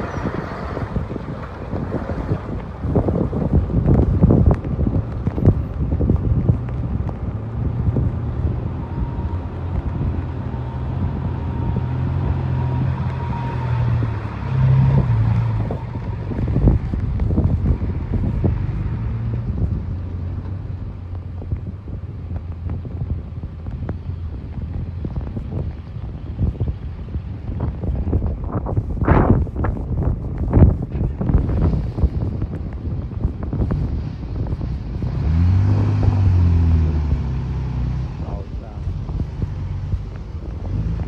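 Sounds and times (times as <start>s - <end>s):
dump truck engine humming: 0.0s - 22.3s
wind buffeting microphone: 0.0s - 41.0s.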